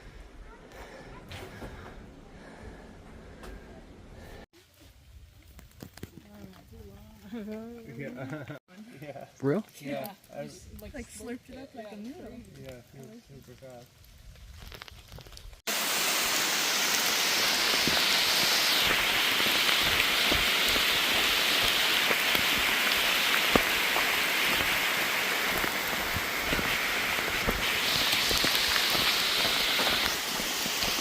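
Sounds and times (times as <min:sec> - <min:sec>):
heavy rain falling: 0:15.7 - 0:31.0
raindrops ticking close by: 0:16.9 - 0:31.0.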